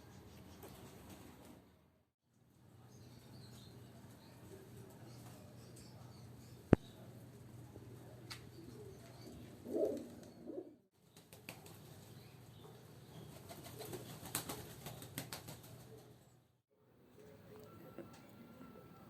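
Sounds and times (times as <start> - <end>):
pigeon cooing: 8.5 - 10.8
wings flapping: 11.1 - 12.1, 13.2 - 16.1.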